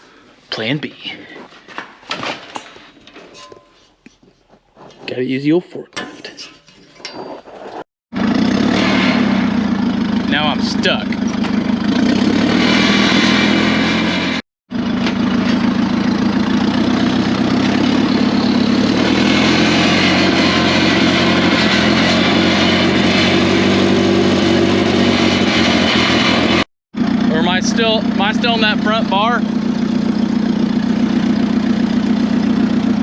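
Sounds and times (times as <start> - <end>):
forklift engine running: 8.2 - 33.0.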